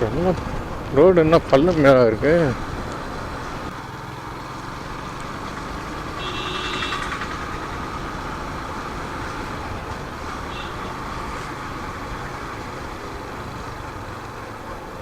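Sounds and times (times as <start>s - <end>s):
motorcycle engine at road speed: 0.0s - 15.0s
wind and road noise: 0.0s - 15.0s.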